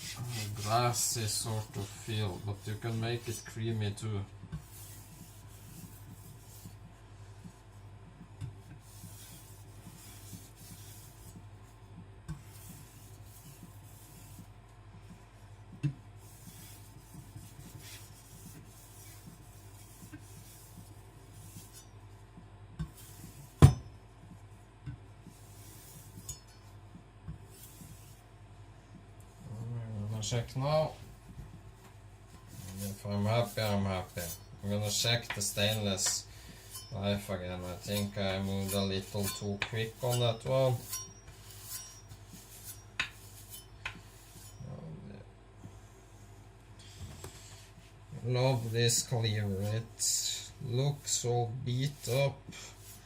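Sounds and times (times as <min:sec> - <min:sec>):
knife scraping on whetstone: 0:00.0 - 0:03.6, 0:32.4 - 0:44.7, 0:48.5 - 0:53.0.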